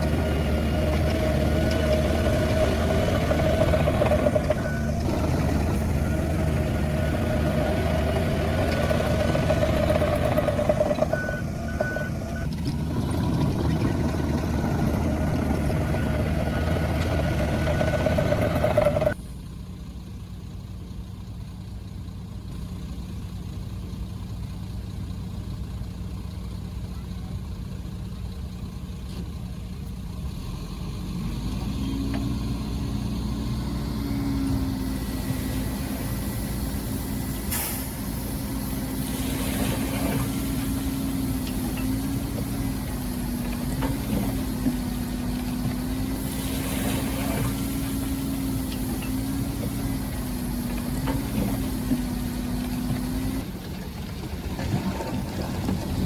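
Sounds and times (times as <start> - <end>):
engine revving: 0.0 - 19.2, 30.3 - 53.6
engine with rising whine: 0.0 - 19.2, 30.2 - 56.0
diesel engine idling: 0.0 - 30.5, 32.7 - 56.0.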